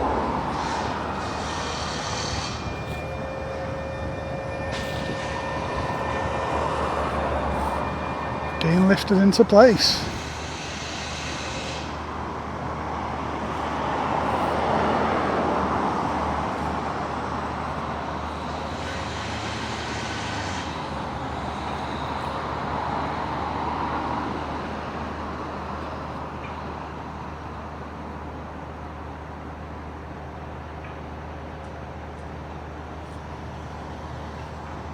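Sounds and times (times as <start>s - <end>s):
vehicles passing: 0.0s - 26.1s.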